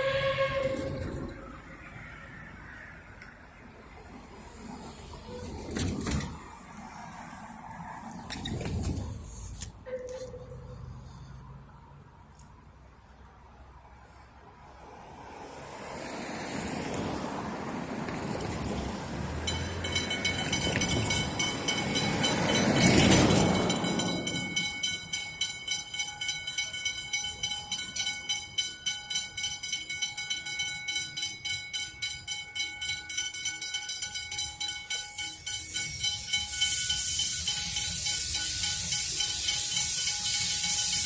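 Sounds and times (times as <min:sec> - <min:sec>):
wheels clattering on rails: 0:00.0 - 0:02.3, 0:04.1 - 0:10.8, 0:16.4 - 0:41.0
steam locomotive passing: 0:00.0 - 0:12.0, 0:14.8 - 0:41.0
high steady squeal: 0:19.5 - 0:41.0.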